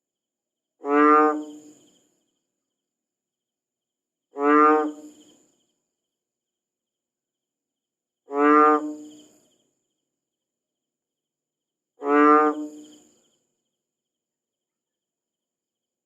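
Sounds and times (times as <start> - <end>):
frog croaking: 0.8 - 2.1, 4.3 - 5.6, 8.2 - 9.6, 12.0 - 13.3.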